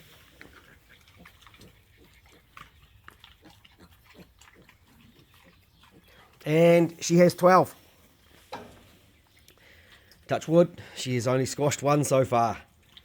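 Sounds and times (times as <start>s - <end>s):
piglets grunting and squeaking: 0.0s - 6.5s.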